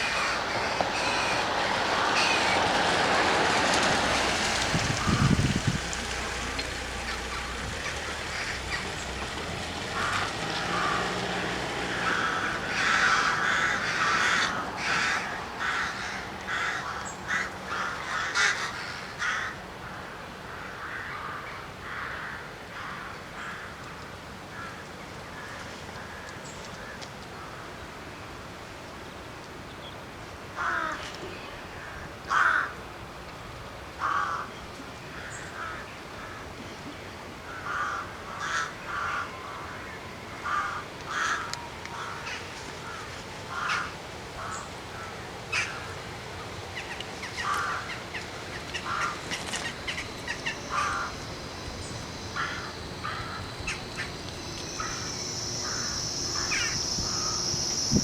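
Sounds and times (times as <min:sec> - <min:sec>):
train rumble: 0:00.0 - 0:18.9, 0:38.9 - 0:58.0
crows cawing: 0:00.0 - 0:23.8, 0:30.6 - 0:31.1, 0:31.8 - 0:32.8, 0:34.0 - 0:34.5, 0:35.1 - 0:36.4, 0:37.5 - 0:46.0, 0:46.8 - 0:57.7.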